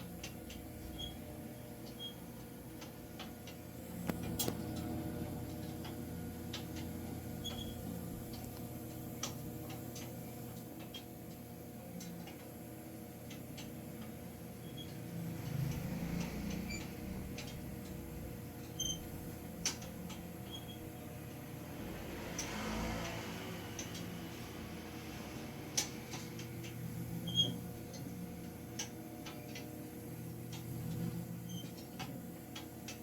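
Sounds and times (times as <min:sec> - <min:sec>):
rotisserie machine humming: 0:00.0 - 0:33.0
light clicks and ticks: 0:15.4 - 0:18.0.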